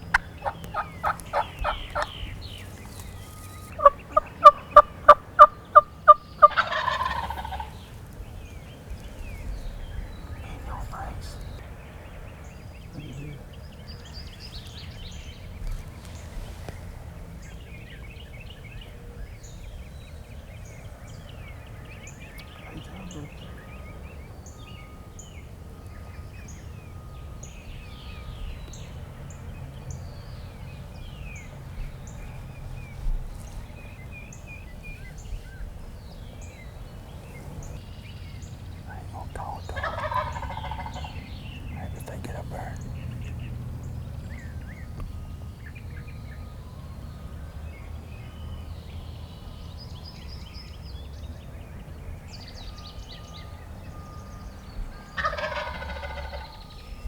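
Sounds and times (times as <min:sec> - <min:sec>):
songbirds chirping: 0:00.0 - 0:57.0
turkey gobbling: 0:00.1 - 0:08.0, 0:10.2 - 0:11.6, 0:39.0 - 0:41.2, 0:55.2 - 0:56.6.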